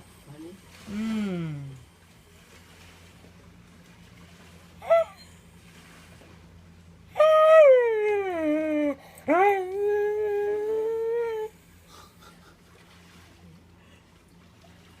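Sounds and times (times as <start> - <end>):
dog whining: 4.8 - 5.4.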